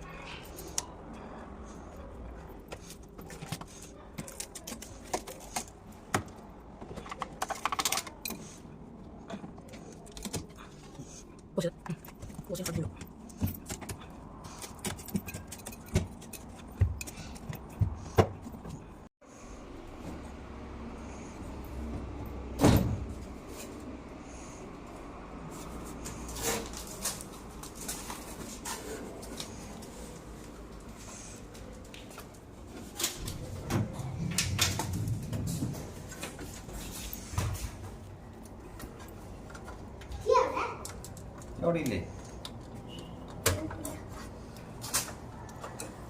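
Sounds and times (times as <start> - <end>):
low hum: 33.2 - 36.8.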